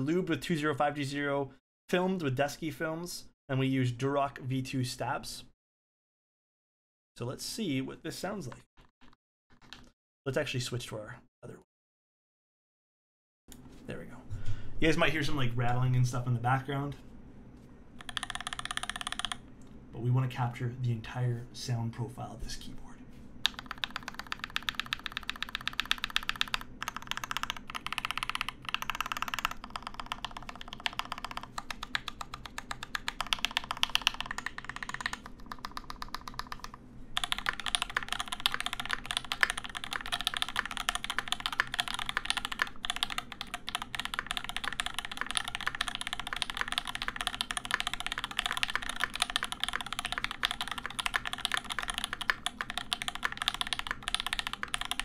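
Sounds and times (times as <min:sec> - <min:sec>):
fast typing on mechanical keyboard: 0:18.0 - 0:19.4, 0:23.4 - 0:55.0.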